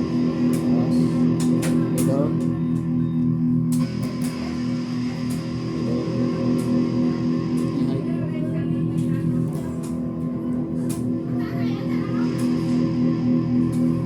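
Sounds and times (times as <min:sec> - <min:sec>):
distorted electric guitar chords: 0:00.0 - 0:14.0.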